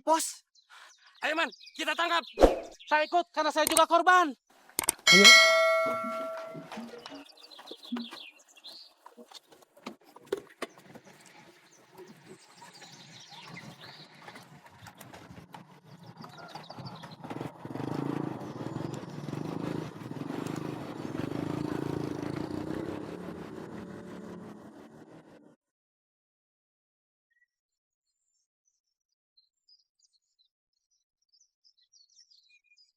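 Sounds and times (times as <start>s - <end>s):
vehicle engine running: 15.0s - 25.5s.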